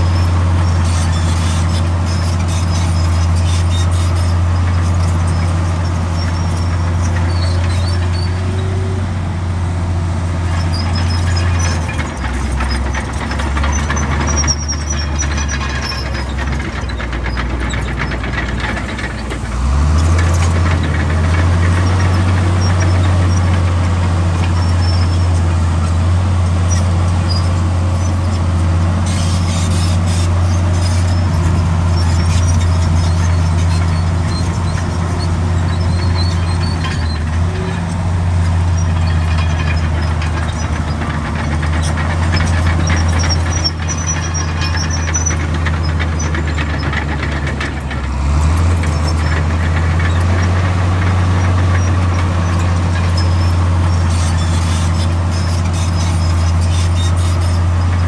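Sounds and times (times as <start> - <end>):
metallic squeaks and clanks: 0.0 - 9.0, 10.4 - 58.0
heavy diesel machinery droning: 0.0 - 58.0.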